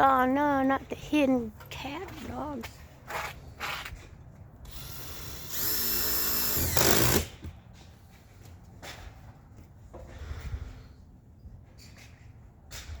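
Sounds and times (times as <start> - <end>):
power drill driving a screw: 4.7 - 7.5.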